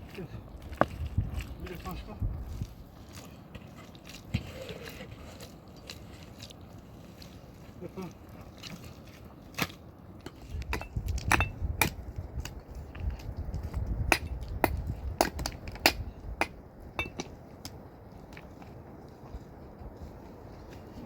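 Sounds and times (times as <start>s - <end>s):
hard objects clinking and knocking: 17.0s - 17.3s.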